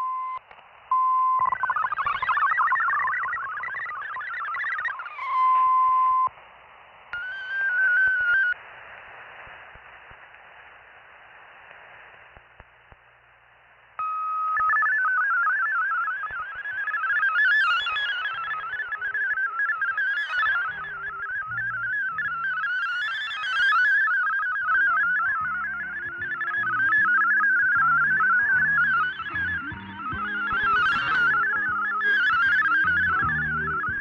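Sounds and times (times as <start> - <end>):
warbling data tones: 1.0 - 6.3, 7.2 - 8.6, 14.0 - 34.0
short beeps: 5.2 - 6.3
radio band static: 14.4 - 34.0.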